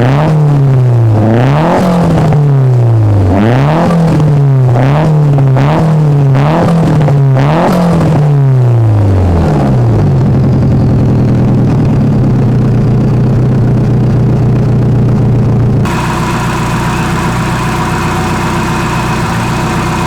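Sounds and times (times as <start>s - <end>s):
turbo engine revving: 0.0s - 20.0s
engine idling: 8.4s - 20.0s.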